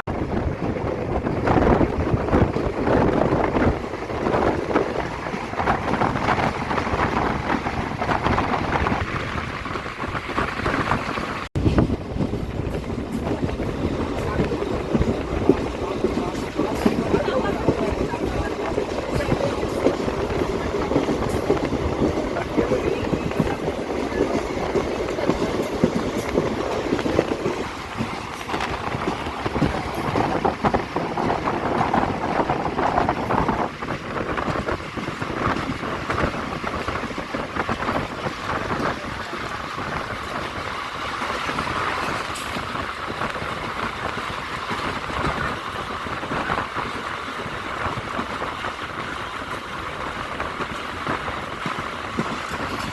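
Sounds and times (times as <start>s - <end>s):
train wheels rumbling on rails: 0.0s - 52.9s.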